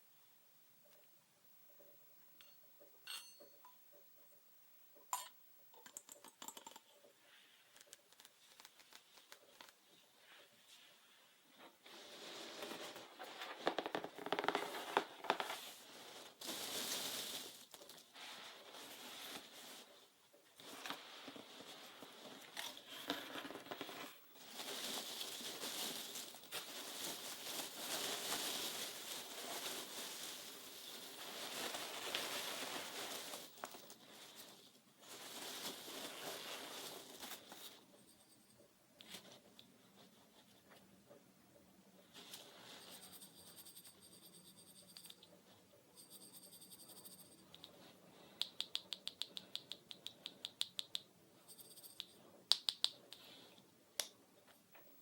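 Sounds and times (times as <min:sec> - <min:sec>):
rustling and crinkling handling: 0:07.2 - 0:40.9, 0:42.0 - 0:43.8.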